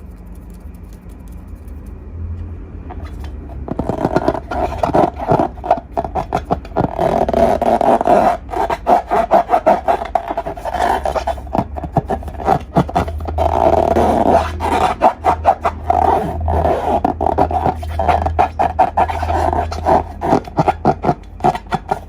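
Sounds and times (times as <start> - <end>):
rubber balloons squeaking: 2.9 - 22.0.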